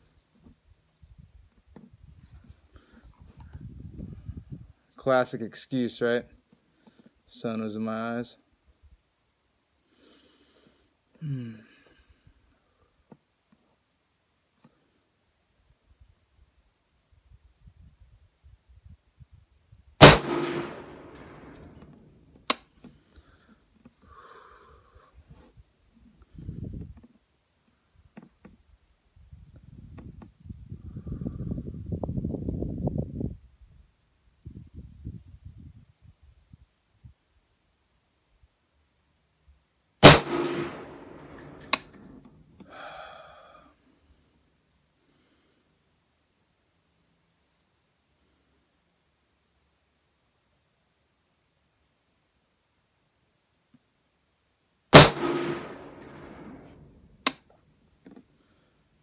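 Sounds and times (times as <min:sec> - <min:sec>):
rifle shot with echo: 0:20.0 - 0:21.6, 0:40.0 - 0:41.8, 0:54.9 - 0:56.7
sharp metallic clink: 0:20.0 - 0:21.9, 0:40.0 - 0:42.3, 0:55.0 - 0:56.7.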